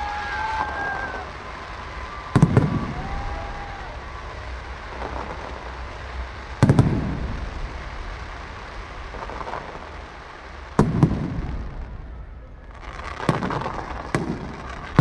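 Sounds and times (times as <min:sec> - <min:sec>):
fireworks bangs: 0:00.0 - 0:15.0
steady low rumble: 0:01.1 - 0:12.7.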